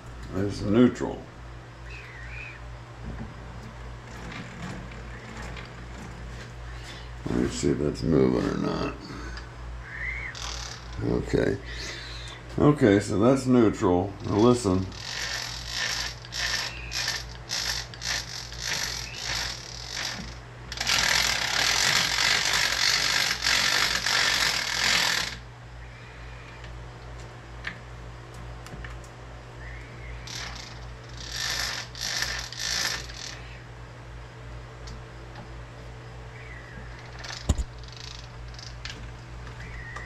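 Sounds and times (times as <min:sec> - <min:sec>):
motor hum: 0:00.0 - 0:40.0
rattling gear clatter: 0:04.0 - 0:06.4, 0:15.0 - 0:25.4, 0:30.3 - 0:33.4.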